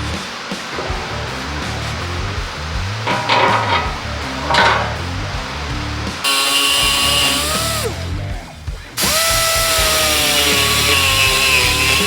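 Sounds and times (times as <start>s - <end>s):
electric power tool whining: 6.2s - 8.2s, 8.9s - 12.0s.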